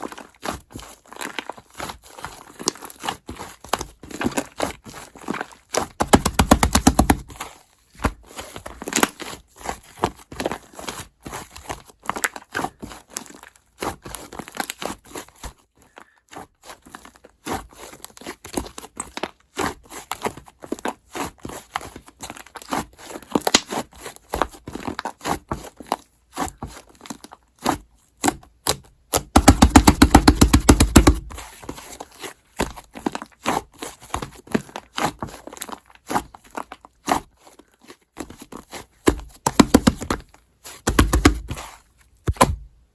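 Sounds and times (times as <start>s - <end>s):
slime squished by hand: 2.5s - 7.5s, 38.6s - 42.8s.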